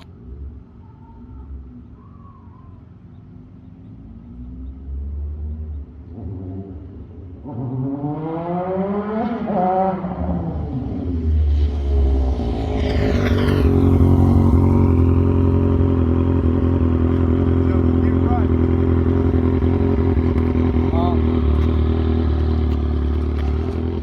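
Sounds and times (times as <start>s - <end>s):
engine revving: 5.2s - 24.0s.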